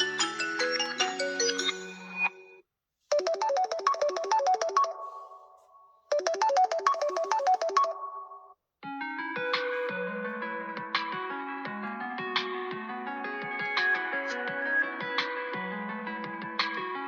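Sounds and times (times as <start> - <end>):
phone ringtones: 3.1 - 5.4, 6.1 - 8.5.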